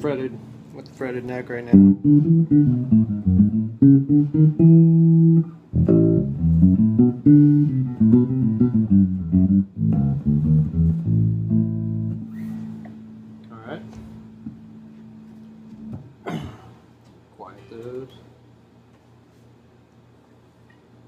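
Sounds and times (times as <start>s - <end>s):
electric bass plucked notes: 1.7s - 16.2s.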